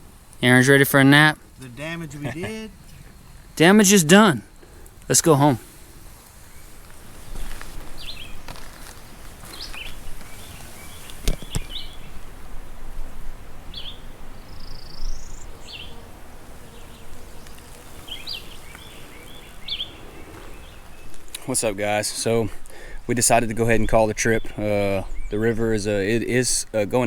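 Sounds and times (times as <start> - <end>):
birds chirping: 0.0 - 5.6, 6.4 - 12.2, 13.7 - 27.0
steady background noise: 0.0 - 7.9.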